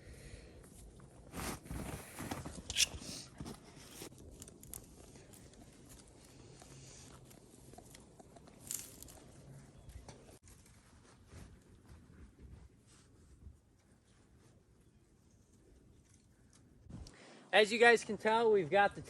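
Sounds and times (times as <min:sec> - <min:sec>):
footsteps in snow: 0:01.2 - 0:02.6.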